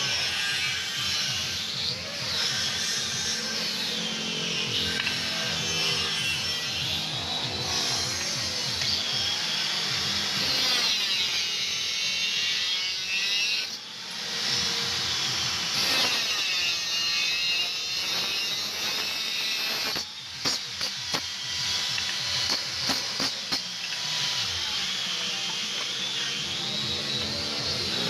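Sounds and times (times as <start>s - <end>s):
power tool whining on steel: 0.0s - 28.0s
sharp metallic clicks: 21.9s - 24.1s.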